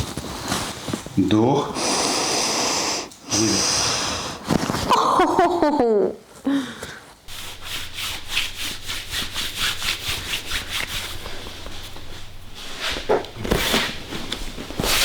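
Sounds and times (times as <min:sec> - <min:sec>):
hands rubbing skin: 0:07.3 - 0:15.0.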